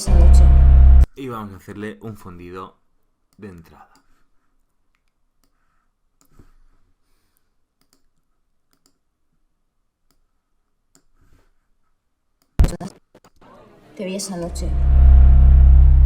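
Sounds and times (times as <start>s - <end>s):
mouse and keyboard clicks: 7.8s - 9.0s.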